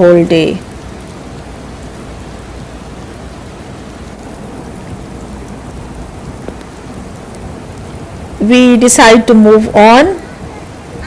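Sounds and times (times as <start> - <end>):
heavy rain pouring: 0.0 - 11.0
faint tick of raindrop: 0.6 - 8.5.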